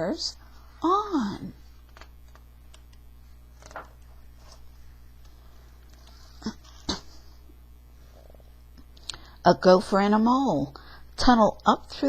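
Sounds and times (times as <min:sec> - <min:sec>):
steady low hum: 0:00.0 - 0:12.0
faint handling noises: 0:01.7 - 0:06.5.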